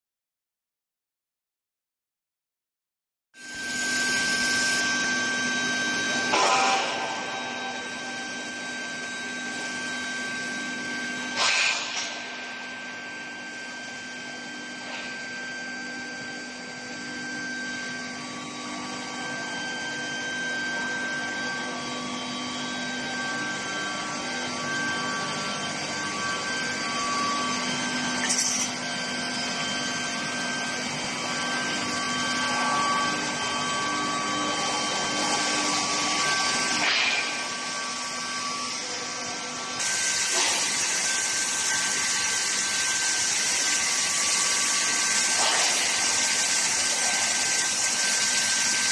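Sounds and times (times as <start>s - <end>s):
industrial drone: 3.4s - 48.9s
machine whining tones: 3.4s - 48.9s.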